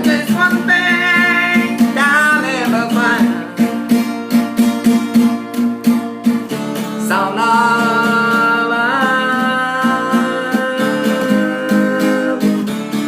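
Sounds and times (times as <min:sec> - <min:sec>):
acoustic guitar strumming: 0:00.0 - 0:13.0
person singing a long note: 0:07.1 - 0:12.6.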